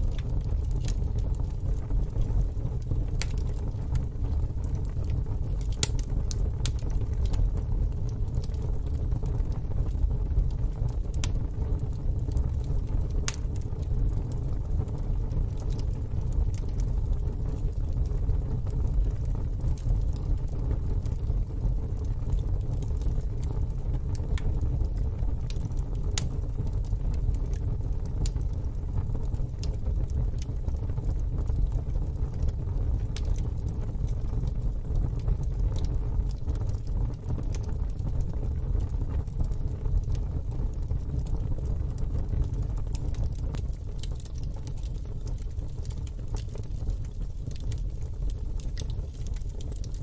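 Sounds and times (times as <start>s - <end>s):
wood fire crackling: 0.0s - 50.0s
fire sharp pops: 5.6s - 7.4s.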